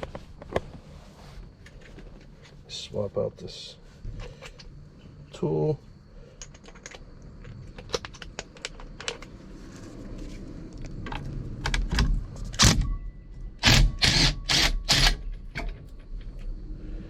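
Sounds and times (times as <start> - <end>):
impact wrench bursts: 13.6 - 15.2.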